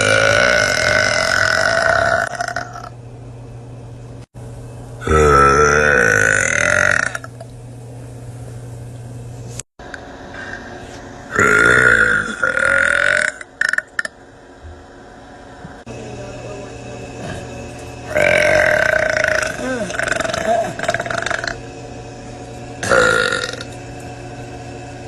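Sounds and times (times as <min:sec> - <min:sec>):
woman burping loudly: 0:00.0 - 0:02.9, 0:05.0 - 0:07.3, 0:11.3 - 0:14.1, 0:18.1 - 0:21.6, 0:22.8 - 0:23.7.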